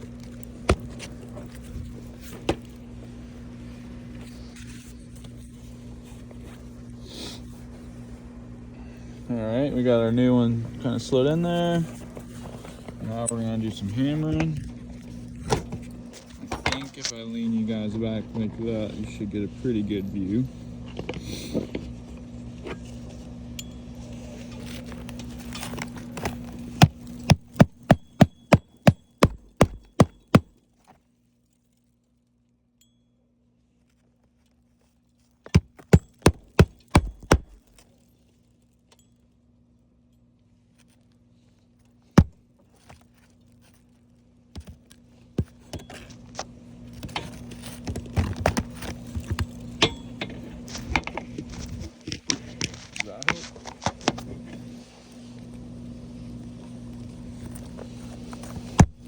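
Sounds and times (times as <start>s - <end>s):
steady low hum: 0.0s - 30.8s, 32.8s - 59.0s
hammer striking nails: 26.8s - 30.6s, 35.5s - 37.7s
scattered knocks: 27.3s - 30.5s, 35.5s - 37.6s.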